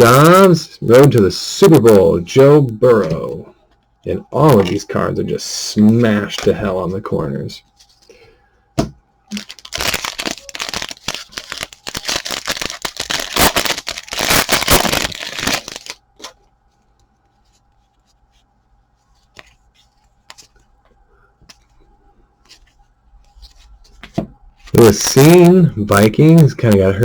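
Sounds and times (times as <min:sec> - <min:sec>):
wrapper tearing and crinkling: 0:09.3 - 0:16.0.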